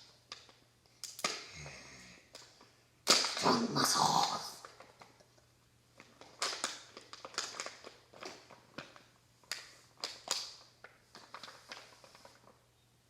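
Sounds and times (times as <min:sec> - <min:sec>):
plastic packaging crinkling and tearing: 0:06.0 - 0:12.6.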